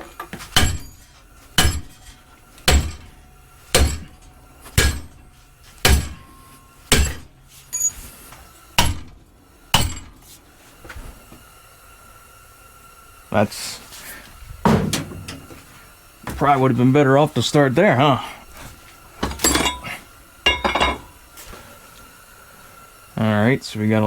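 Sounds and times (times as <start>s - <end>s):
faint metallic ring: 7.7s - 8.0s.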